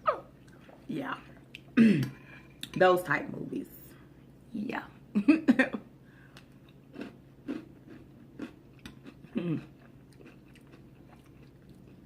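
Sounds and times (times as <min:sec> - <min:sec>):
person chewing: 0:06.3 - 0:12.0.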